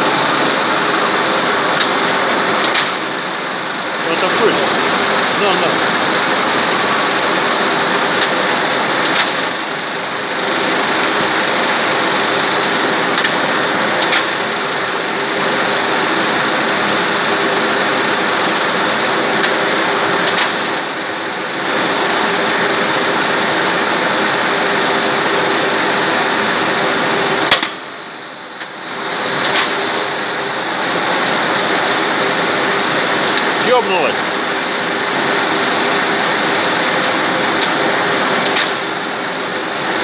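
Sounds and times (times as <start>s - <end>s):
lathe running: 0.0s - 13.2s.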